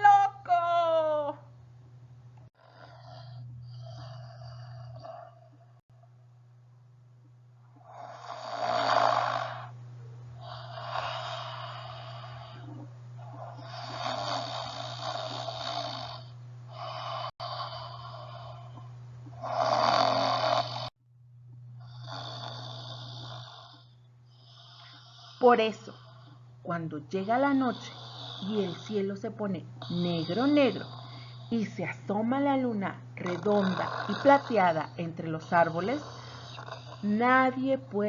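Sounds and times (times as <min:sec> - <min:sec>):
loud rasping snores: 0:02.6 - 0:05.8, 0:07.8 - 0:09.7, 0:10.4 - 0:18.8, 0:19.4 - 0:21.0, 0:21.8 - 0:26.3, 0:27.2 - 0:29.1, 0:29.8 - 0:31.8, 0:33.2 - 0:37.6.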